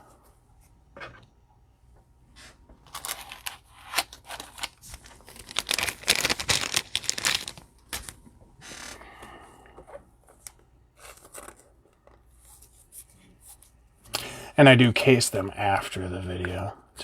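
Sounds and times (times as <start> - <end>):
wrapper tearing and crinkling: 2.9 - 8.2.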